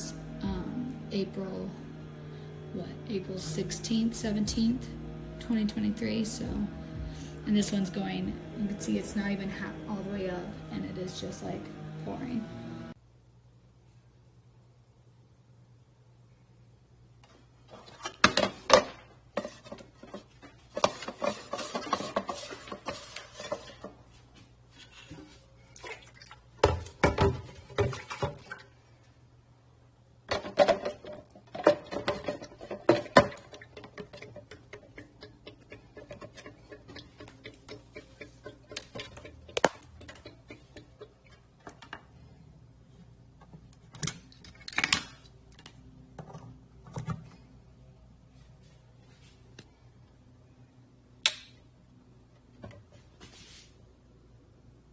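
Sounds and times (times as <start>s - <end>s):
low steady hum: 0.0s - 54.9s
hard objects knocking and clattering: 30.3s - 42.1s.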